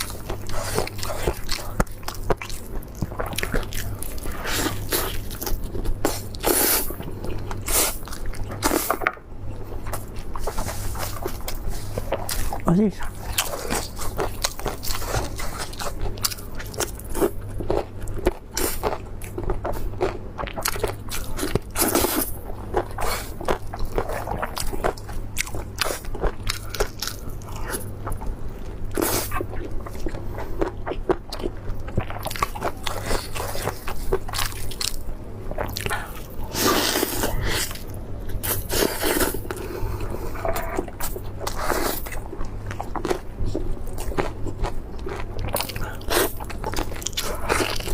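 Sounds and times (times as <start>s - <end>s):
chewing and wet mouth sounds: 0.0s - 47.9s
crunching of crisp food: 13.2s - 39.6s, 40.4s - 47.9s.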